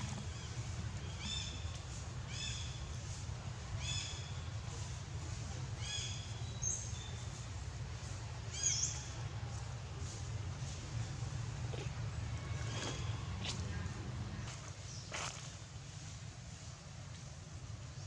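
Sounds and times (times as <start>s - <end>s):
low rumble: 0.0s - 5.6s.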